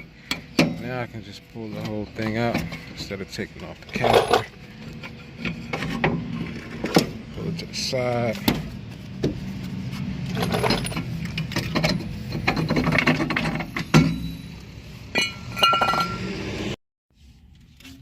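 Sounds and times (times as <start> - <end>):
ringing metal tone: 13.4 - 16.3.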